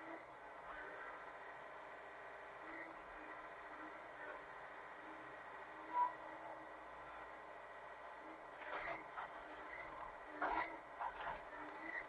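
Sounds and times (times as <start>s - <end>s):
excavator engine and hydraulics hum: 0.0s - 12.0s.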